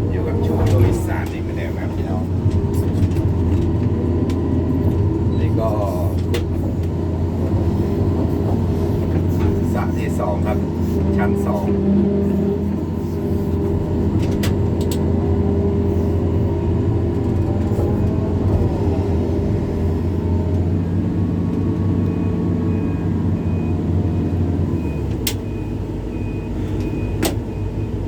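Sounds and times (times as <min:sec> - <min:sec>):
diesel engine running: 0:00.0 - 0:28.0
backup alarm beeping: 0:22.0 - 0:28.0.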